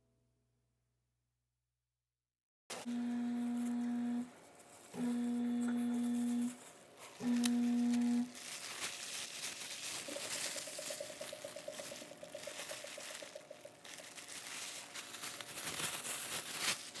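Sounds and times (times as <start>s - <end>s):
material crinkling and rustling: 3.7s - 17.0s
fast pulsing tone: 10.0s - 14.2s.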